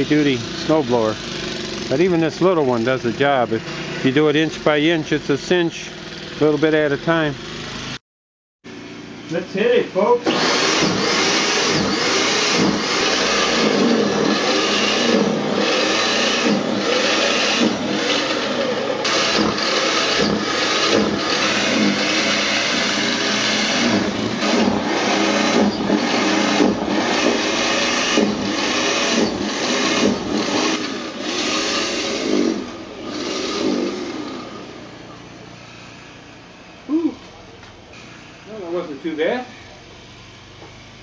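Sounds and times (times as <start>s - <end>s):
snowblower motor running: 0.0s - 8.0s, 9.3s - 35.9s.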